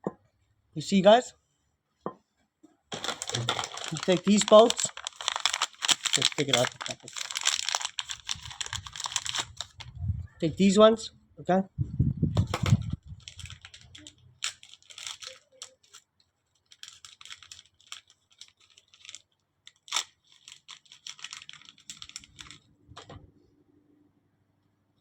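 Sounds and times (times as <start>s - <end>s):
plastic packaging rustling: 2.9s - 9.9s, 12.4s - 22.7s.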